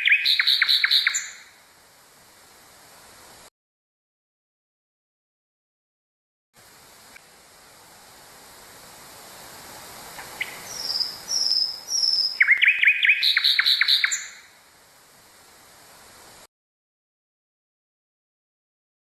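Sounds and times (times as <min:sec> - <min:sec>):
nightingale singing: 0:00.0 - 0:01.6, 0:10.1 - 0:14.7
steady hiss: 0:00.0 - 0:03.5, 0:06.6 - 0:16.5.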